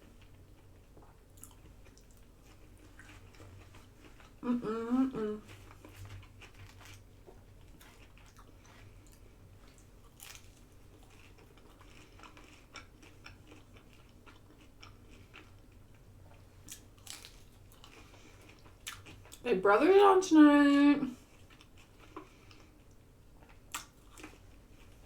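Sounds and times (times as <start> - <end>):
person chewing food: 0.0 - 4.8, 5.4 - 19.4, 21.2 - 25.0
small crunches: 5.6 - 8.8, 16.7 - 19.2.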